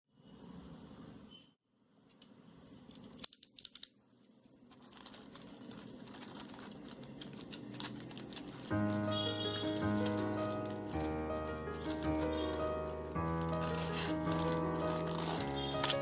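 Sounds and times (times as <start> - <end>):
packaging rustling: 4.5 - 16.0.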